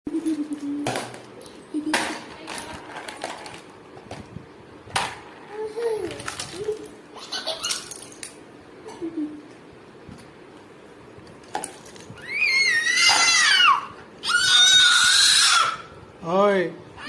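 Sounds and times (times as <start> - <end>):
child shrieking: 12.2 - 15.9.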